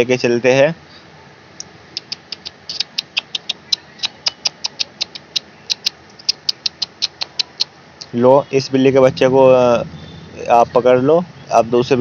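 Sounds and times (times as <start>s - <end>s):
light sharp clicks: 1.6s - 8.2s.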